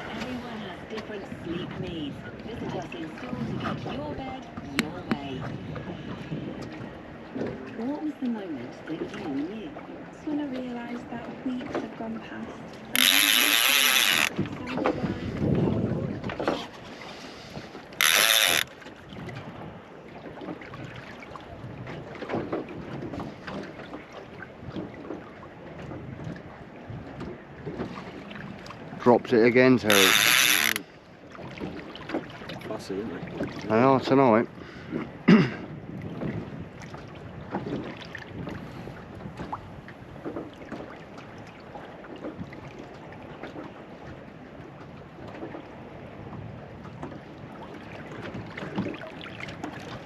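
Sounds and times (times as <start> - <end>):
wind on microphone: 0.0 - 9.7, 12.2 - 20.0, 24.5 - 29.2, 34.8 - 40.4
knocks and splashes: 0.0 - 34.1, 34.8 - 50.0
water lapping at boat: 0.0 - 50.0.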